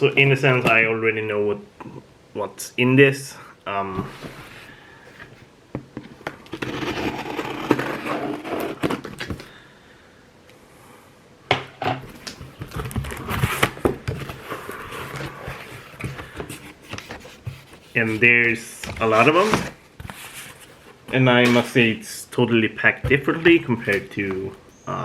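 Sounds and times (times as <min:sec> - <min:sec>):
cardboard box being opened: 0:06.3 - 0:09.4, 0:12.2 - 0:18.3
sharp knocks and scrapes: 0:11.9 - 0:21.9
packing material rustling: 0:12.1 - 0:21.8.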